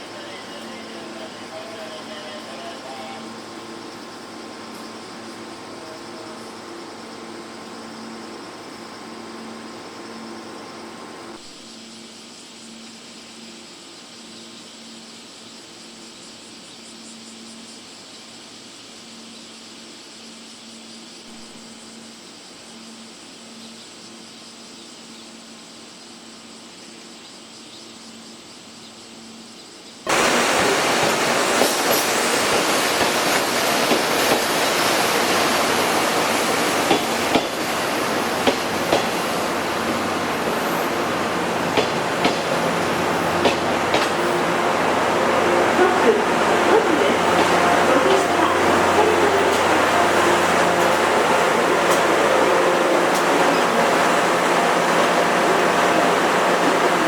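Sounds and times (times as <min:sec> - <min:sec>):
train coach hum: 0:00.0 - 0:11.6, 0:30.1 - 0:57.0
train running noise: 0:00.0 - 0:11.8, 0:30.1 - 0:57.0
wheels clicking over rail joints: 0:30.1 - 0:57.0.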